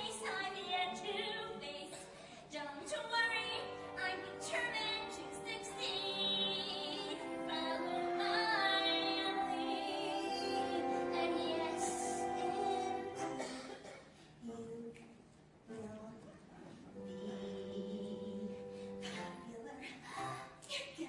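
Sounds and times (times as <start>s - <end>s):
woman singing with vibrato: 0.0s - 13.6s
instrumental accompaniment: 3.4s - 13.7s.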